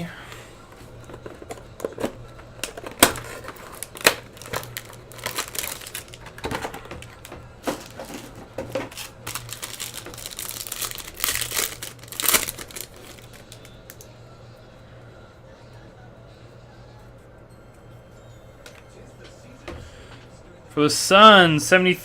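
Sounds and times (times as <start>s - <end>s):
plastic wrapping crinkling: 1.0s - 14.1s.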